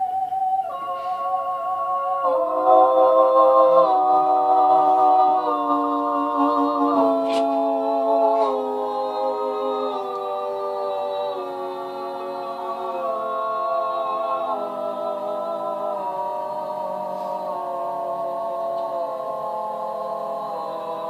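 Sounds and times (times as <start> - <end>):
choir-like sustained chords: 0.0 - 21.0.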